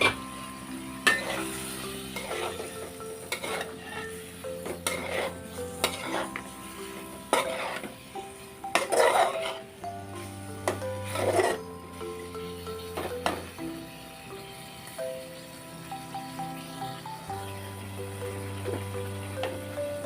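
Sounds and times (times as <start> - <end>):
spoon clinking against pan: 0.0 - 9.7
metal spoon stirring in pot: 0.9 - 13.5.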